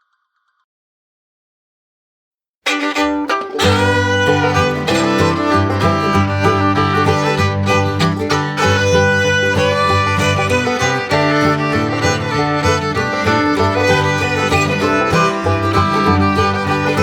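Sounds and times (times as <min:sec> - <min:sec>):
fiddle music: 0:02.7 - 0:17.0
bass line: 0:02.8 - 0:17.0.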